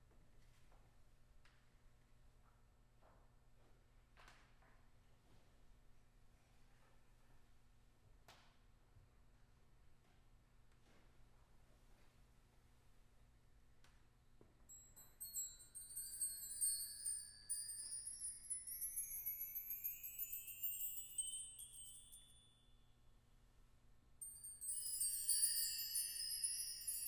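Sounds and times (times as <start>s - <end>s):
metallic percussion tremolo: 14.7s - 22.4s, 24.2s - 27.0s
cluster of ringing metal tones: 14.7s - 22.6s, 24.2s - 27.0s.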